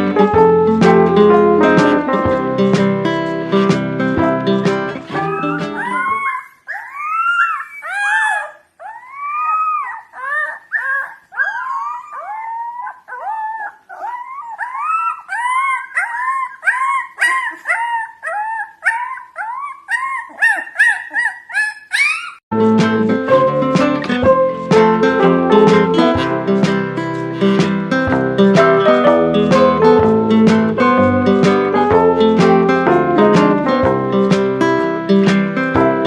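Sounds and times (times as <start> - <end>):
pack of dogs howling and yipping: 5.2 - 20.6.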